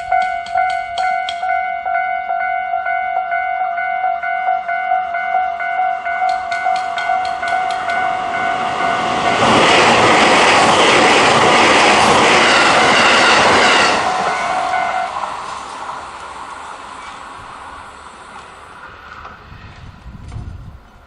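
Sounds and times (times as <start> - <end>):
level crossing warning bell: 0.0 - 10.6, 13.4 - 15.5
train wheels rushing on rail: 6.1 - 21.0.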